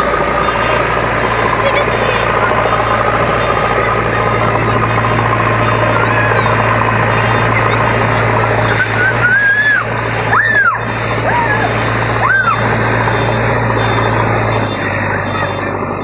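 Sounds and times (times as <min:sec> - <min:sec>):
diesel engine idling: 0:00.0 - 0:16.0
rising and falling whistle calls: 0:02.3 - 0:16.0.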